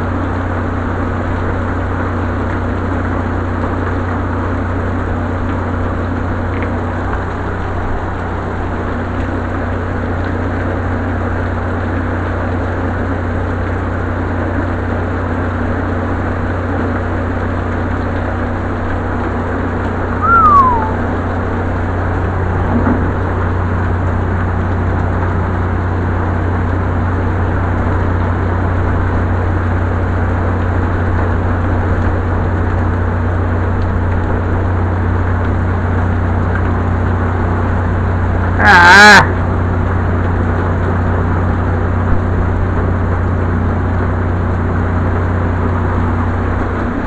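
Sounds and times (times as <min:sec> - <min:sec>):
steady rain: 0:00.0 - 0:47.0
low hum: 0:20.1 - 0:23.3
short falling tone: 0:20.2 - 0:21.0.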